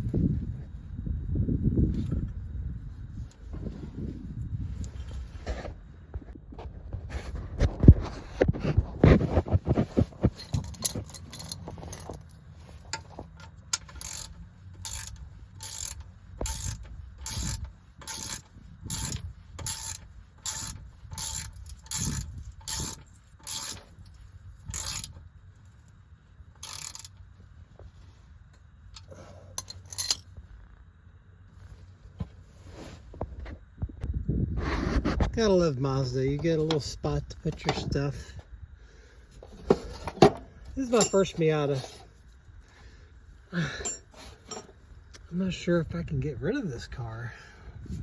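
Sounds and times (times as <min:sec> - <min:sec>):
tools and parts clattering: 0:07.2 - 0:25.9, 0:26.5 - 0:27.2, 0:28.9 - 0:30.4, 0:36.3 - 0:38.4, 0:39.3 - 0:42.3, 0:43.6 - 0:45.3
ratchet wrench clicking: 0:10.4 - 0:12.3, 0:12.9 - 0:25.2, 0:26.6 - 0:27.2, 0:29.0 - 0:30.3.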